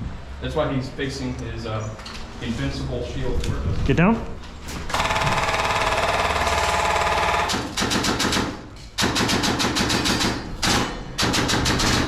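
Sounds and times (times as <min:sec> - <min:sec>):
airsoft guns firing full auto: 0:04.9 - 0:12.0.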